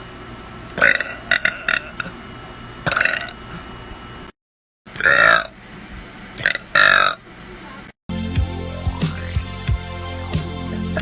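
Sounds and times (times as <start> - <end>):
person burping: 0.8 - 2.1, 2.9 - 3.4, 4.9 - 5.5, 6.4 - 7.2.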